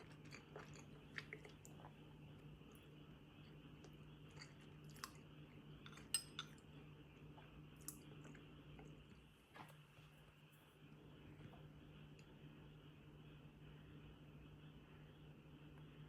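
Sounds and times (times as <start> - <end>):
quiet chewing: 0.0 - 10.2
faint low hum: 0.0 - 16.0.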